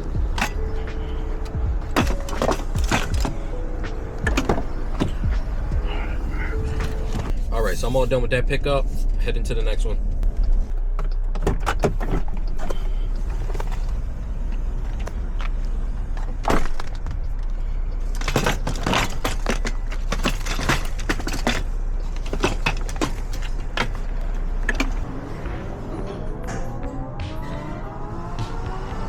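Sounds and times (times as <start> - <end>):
clicks and rattles: 0.0 - 7.4, 10.9 - 25.1
car engine rumbling: 0.0 - 29.0
music: 0.0 - 29.0.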